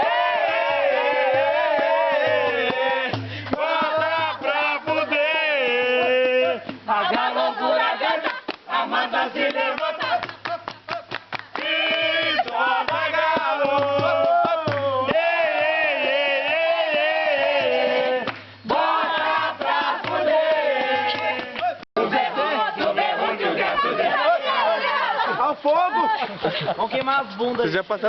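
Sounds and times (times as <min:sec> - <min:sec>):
voices singing a chant: 0:00.0 - 0:26.7
quick clapping: 0:09.4 - 0:14.9, 0:18.3 - 0:18.5.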